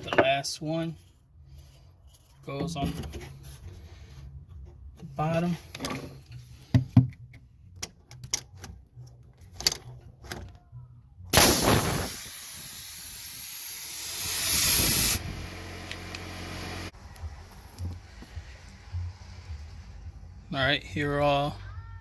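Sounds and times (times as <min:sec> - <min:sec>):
compressed air hissing: 0:11.4 - 0:16.9.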